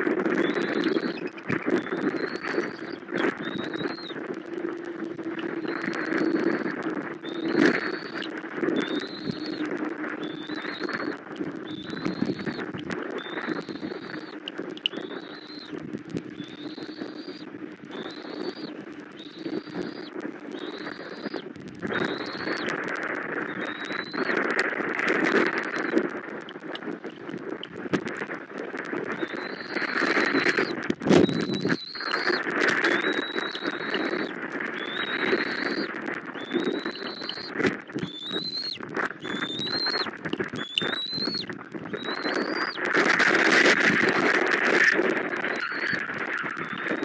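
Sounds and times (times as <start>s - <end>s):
small ticks: 0.0s - 47.0s
eaglet begging whistles: 0.3s - 24.6s, 29.1s - 47.0s.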